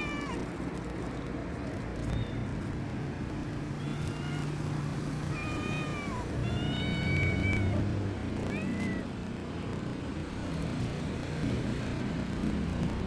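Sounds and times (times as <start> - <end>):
kittens mewing: 3.8 - 9.1.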